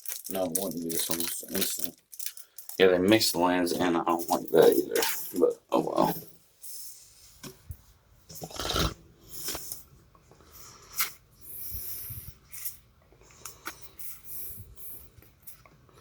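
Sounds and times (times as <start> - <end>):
wrapped cards rustling and crinkling: 0.0 - 5.4.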